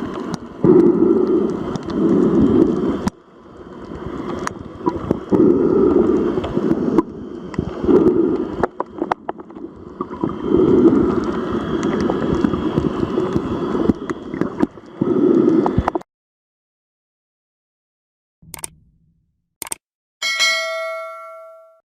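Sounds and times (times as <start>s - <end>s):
sea waves washing in: 0.0s - 15.9s
small clicks: 18.5s - 18.8s, 19.6s - 19.8s.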